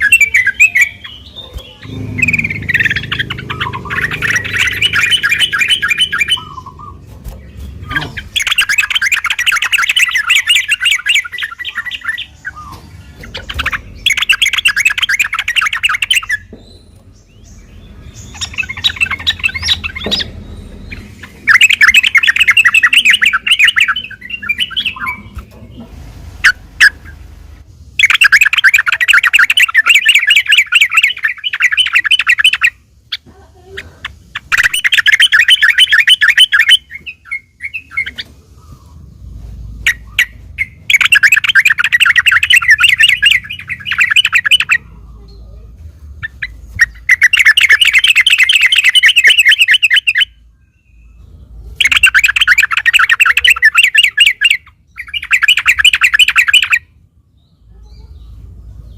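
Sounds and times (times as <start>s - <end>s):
bulbul chattering song: 0.0s - 25.7s, 26.4s - 58.9s.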